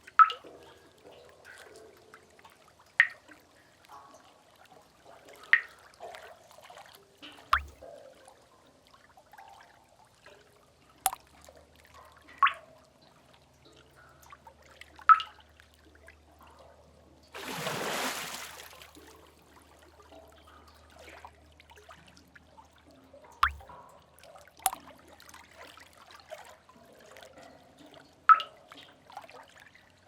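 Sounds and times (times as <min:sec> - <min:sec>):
water drops plopping: 0:00.2 - 0:00.5, 0:03.0 - 0:03.3, 0:05.5 - 0:05.8, 0:07.6 - 0:07.8, 0:11.1 - 0:11.3, 0:12.3 - 0:12.7, 0:15.1 - 0:15.4, 0:23.4 - 0:23.8, 0:24.6 - 0:24.9, 0:28.3 - 0:28.6.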